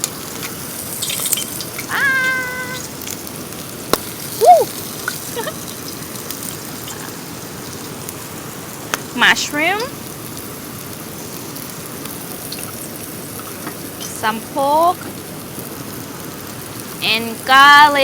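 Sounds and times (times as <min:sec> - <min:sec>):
steady rain hiss: 0:00.0 - 0:18.0
meow-like call: 0:01.9 - 0:02.9, 0:04.4 - 0:04.8.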